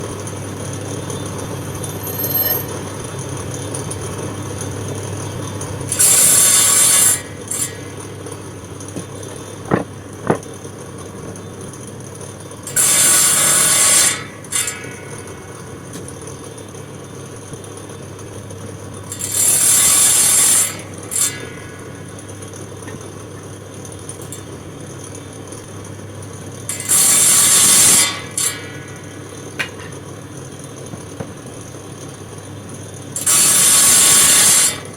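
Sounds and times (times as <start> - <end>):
power saw cutting wood: 4.6 - 16.7, 18.8 - 30.1, 33.1 - 34.9
sharp knocks: 9.0 - 10.6.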